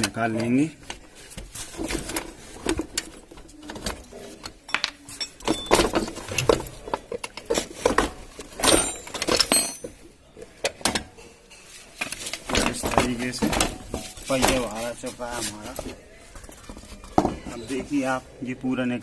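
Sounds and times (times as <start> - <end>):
metal clanks and rattles: 1.7 - 10.1, 10.7 - 14.9
metallic rings: 4.7 - 6.2, 8.6 - 10.0.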